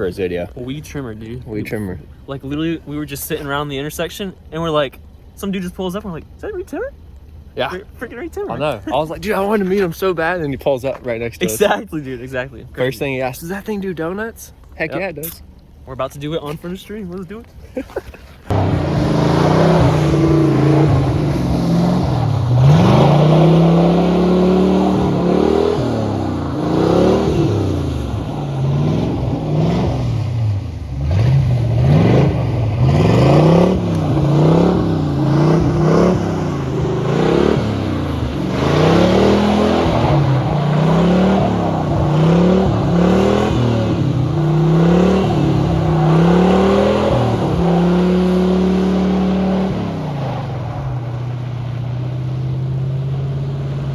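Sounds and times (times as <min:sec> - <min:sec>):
car engine revving hard: 0:18.5 - 0:53.9.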